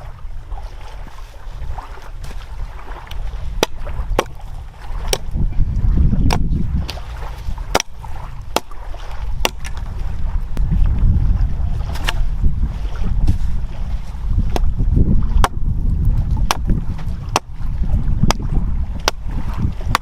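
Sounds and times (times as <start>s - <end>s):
wind rumble on microphone: 0.0s - 20.0s
sharp wooden knocks: 5.0s - 5.3s, 6.2s - 7.0s, 7.7s - 7.9s, 8.5s - 8.8s, 9.4s - 9.8s, 15.4s - 15.6s, 16.4s - 17.5s, 18.2s - 20.0s.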